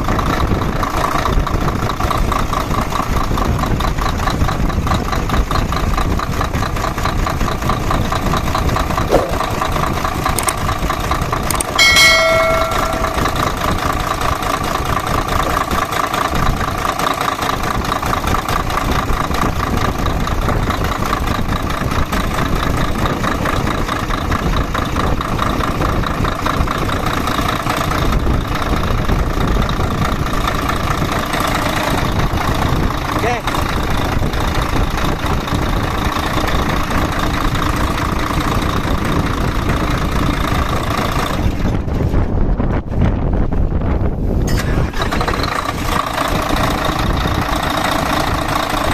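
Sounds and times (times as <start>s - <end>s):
diesel truck engine idling: 0.0s - 42.4s, 44.2s - 48.9s
brief ringing tone: 11.6s - 13.8s.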